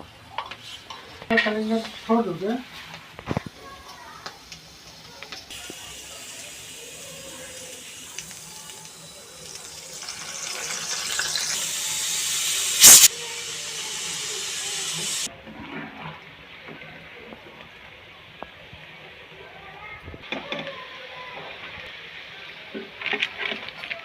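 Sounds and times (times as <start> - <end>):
hot oil sizzling: 1.4 - 15.3, 20.7 - 23.0
sharp oil crackle: 4.2 - 15.3.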